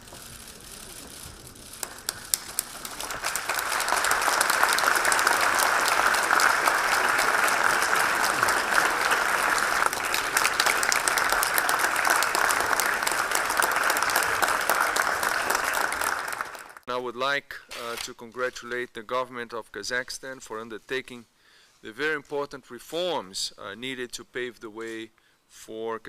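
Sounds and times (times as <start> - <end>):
crowd applauding: 1.7 - 16.8.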